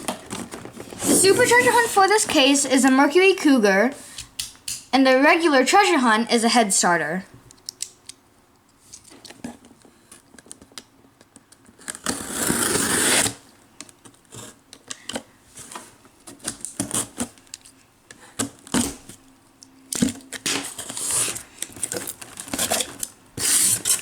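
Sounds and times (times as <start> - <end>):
cardboard tearing and rustling: 0.0 - 2.5, 11.7 - 13.4, 20.4 - 24.0.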